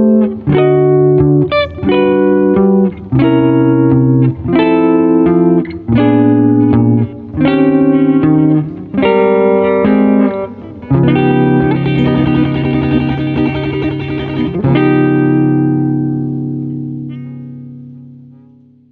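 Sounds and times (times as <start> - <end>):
jazz guitar chords: 0.0 - 18.9.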